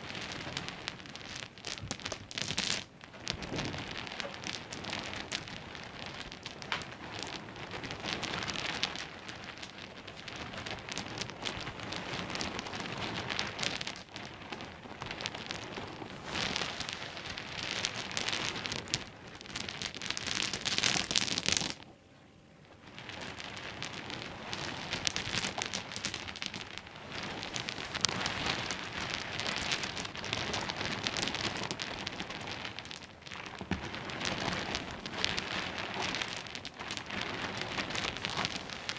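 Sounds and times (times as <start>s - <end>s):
pebbles rattling together: 0.0s - 21.8s, 22.9s - 38.9s.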